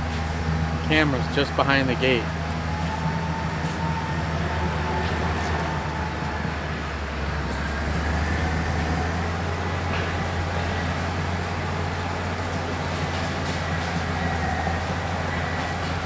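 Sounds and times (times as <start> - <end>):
bulldozer diesel engine droning: 0.0 - 16.0.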